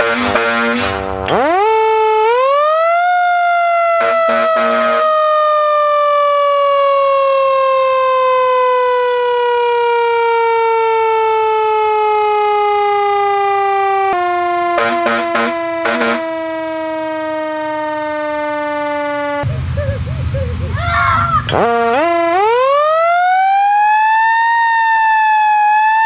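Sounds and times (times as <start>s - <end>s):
horn blast: 0.0s - 1.5s, 3.9s - 5.3s, 14.4s - 17.5s, 21.4s - 22.5s
siren wailing: 0.0s - 19.9s, 20.7s - 26.0s.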